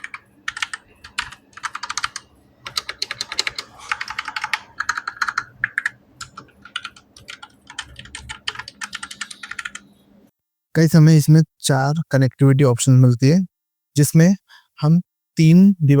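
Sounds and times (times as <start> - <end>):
mechanical keyboard typing: 0.0 - 9.8.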